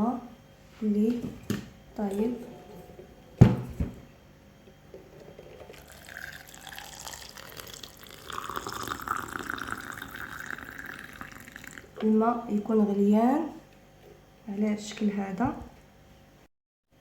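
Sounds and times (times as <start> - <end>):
water pouring into a glass: 5.5 - 12.0.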